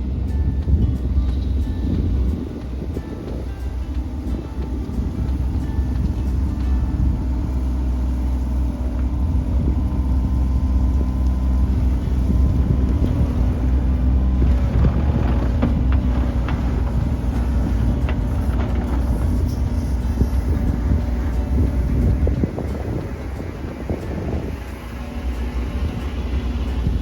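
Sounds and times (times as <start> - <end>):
mini excavator engine running: 0.0 - 27.0
bucket scraping and clattering stone: 14.1 - 21.2.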